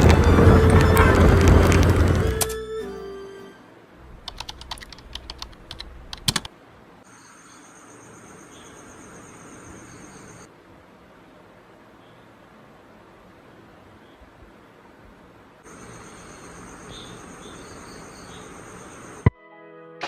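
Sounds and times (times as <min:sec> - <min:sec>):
background music: 0:00.0 - 0:03.8, 0:19.3 - 0:20.0
faint steady high tone: 0:00.0 - 0:03.9
computer keyboard typing: 0:04.2 - 0:06.5.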